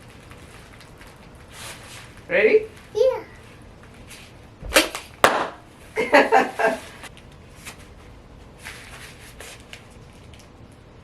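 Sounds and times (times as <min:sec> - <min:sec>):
shuffling and handling noises: 0:00.0 - 0:05.1, 0:06.4 - 0:10.9.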